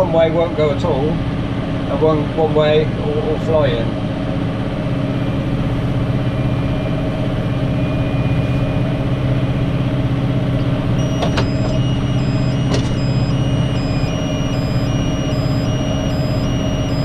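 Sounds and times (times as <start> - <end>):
tractor engine running: 8.8 - 17.0
two-note beeping alarm: 11.0 - 17.0.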